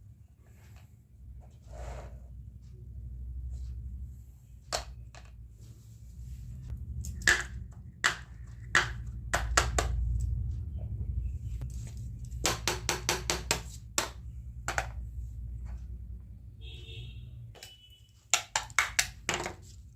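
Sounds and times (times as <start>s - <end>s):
low steady hum: 2.2s - 18.1s.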